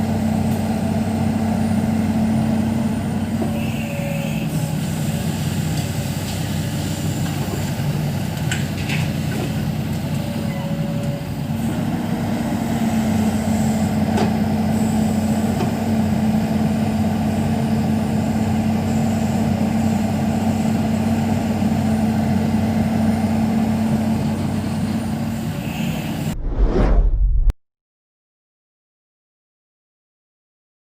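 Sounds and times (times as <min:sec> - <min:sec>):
excavator diesel engine running: 0:00.0 - 0:26.3.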